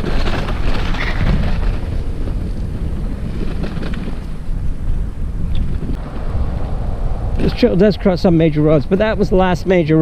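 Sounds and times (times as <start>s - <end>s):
wind rumbling on microphone: 0.0s - 10.0s.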